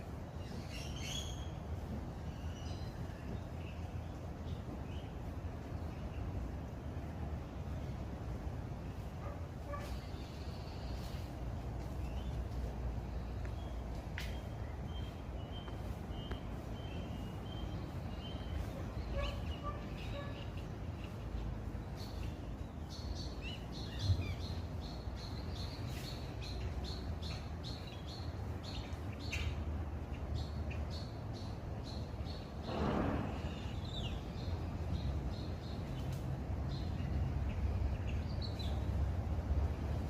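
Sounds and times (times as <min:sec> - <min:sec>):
birds chirping: 0:00.0 - 0:40.0
low outdoor rumble: 0:00.0 - 0:40.0.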